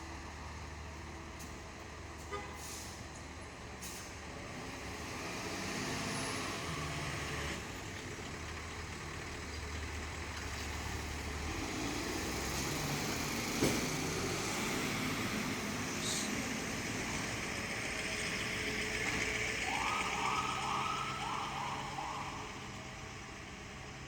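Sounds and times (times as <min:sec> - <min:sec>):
fire engine running: 0:00.0 - 0:24.0
road noise: 0:00.0 - 0:24.0.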